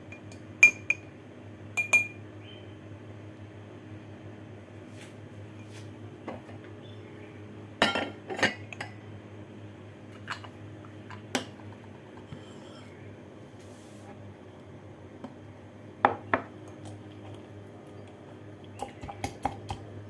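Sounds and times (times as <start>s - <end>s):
utensils clinking on dishware: 7.8s - 9.0s.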